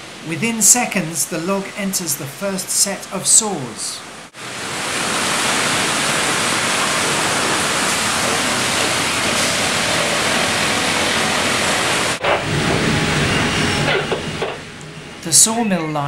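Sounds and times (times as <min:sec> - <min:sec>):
saws cutting log rushing noise: 0:04.6 - 0:14.6.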